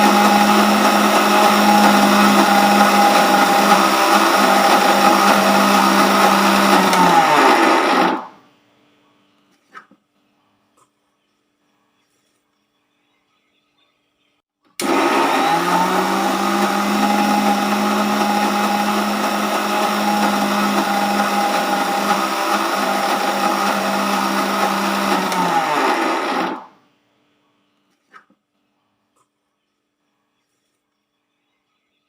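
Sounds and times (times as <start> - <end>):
mixer grinder motor whining: 0.0 - 8.4, 14.8 - 26.8.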